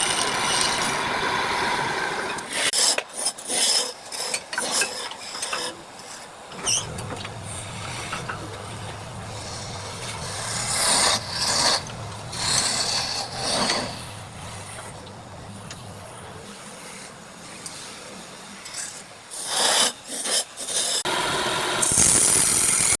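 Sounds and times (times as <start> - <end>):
tool scraping spinning wood: 0.0 - 2.9, 5.6 - 16.4, 21.8 - 23.0
wood lathe humming: 6.5 - 16.4, 21.1 - 23.0.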